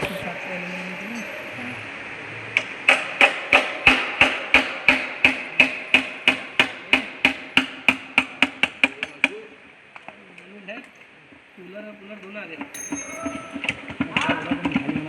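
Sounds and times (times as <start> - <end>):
hammer striking metal: 2.9 - 9.1, 12.8 - 13.9.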